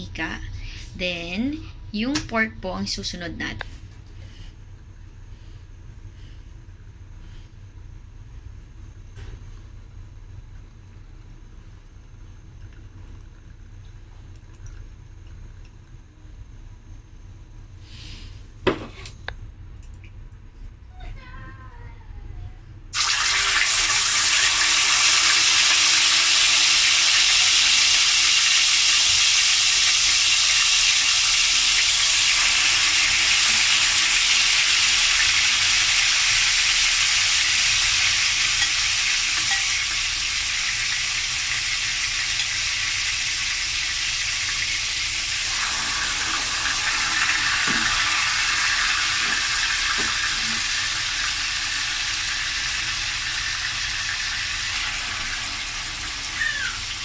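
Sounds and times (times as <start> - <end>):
meat sizzling in hot oil: 23.0 - 57.0.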